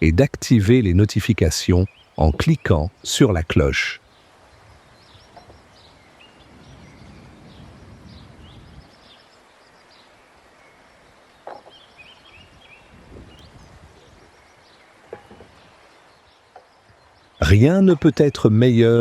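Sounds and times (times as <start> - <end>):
outdoor background noise: 0.0 - 19.0
small birds chirping: 0.0 - 19.0
faint knock: 11.4 - 11.8, 15.1 - 15.6.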